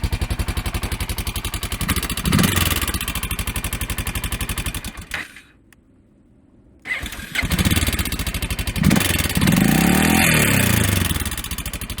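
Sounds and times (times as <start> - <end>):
motorcycle engine revving and idling: 0.0 - 5.5, 6.9 - 12.0
engine ticking: 6.9 - 12.0.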